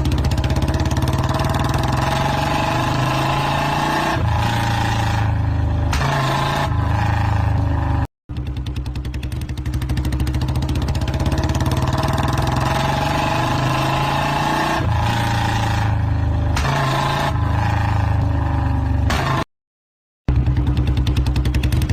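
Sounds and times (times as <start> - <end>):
motorcycle engine running: 0.0 - 19.4, 20.3 - 21.9.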